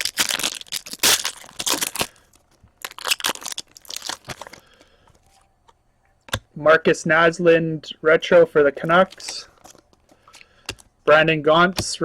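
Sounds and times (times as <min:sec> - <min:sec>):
wrapper tearing and crinkling: 0:00.0 - 0:04.8.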